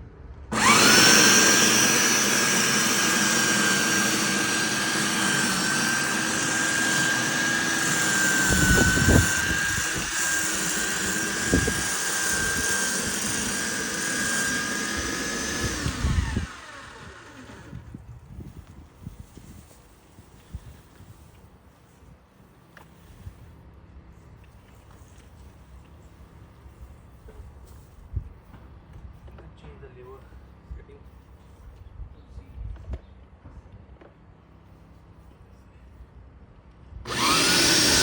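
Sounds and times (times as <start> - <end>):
electric motor whining: 0.5 - 18.1, 37.1 - 38.0.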